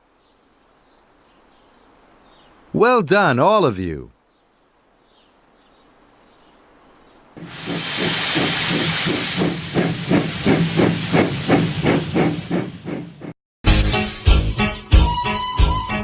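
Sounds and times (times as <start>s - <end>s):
loud hiss of steam: 7.4s - 13.1s
steam locomotive chuffing: 7.4s - 13.3s.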